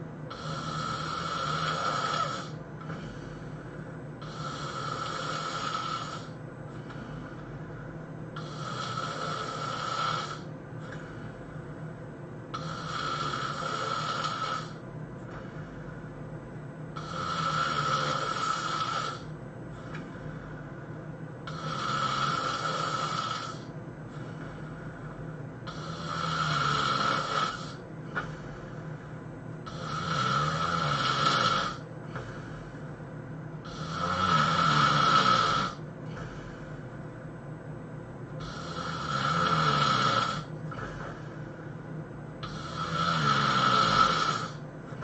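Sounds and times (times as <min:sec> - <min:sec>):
person snoring: 0:00.3 - 0:03.6, 0:04.2 - 0:07.8, 0:08.4 - 0:11.4, 0:12.5 - 0:16.1, 0:17.0 - 0:20.8, 0:21.4 - 0:33.0, 0:33.6 - 0:36.8, 0:38.4 - 0:41.8, 0:42.4 - 0:44.6
low hum: 0:10.5 - 0:12.6, 0:14.8 - 0:17.0, 0:23.7 - 0:25.7.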